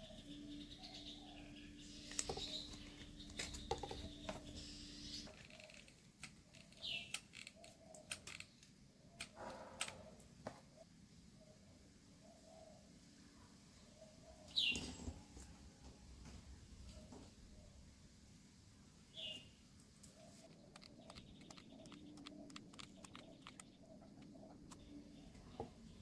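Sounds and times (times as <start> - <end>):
low steady hum: 0.0 - 5.3
light clicks and scratches: 2.1 - 10.6, 19.8 - 26.0.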